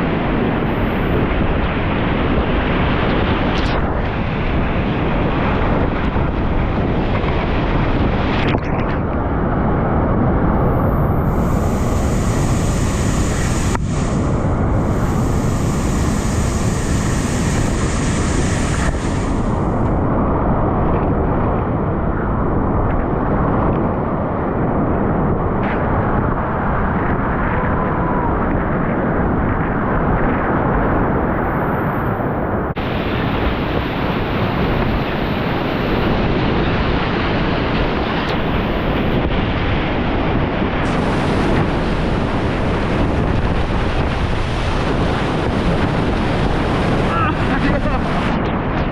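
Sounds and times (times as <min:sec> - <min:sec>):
heavy low rumble: 0:00.0 - 0:20.8, 0:32.7 - 0:48.9.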